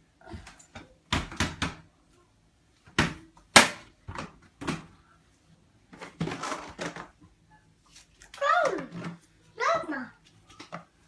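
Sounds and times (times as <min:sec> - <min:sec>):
washing machine knocks and bangs: 0:01.1 - 0:01.8.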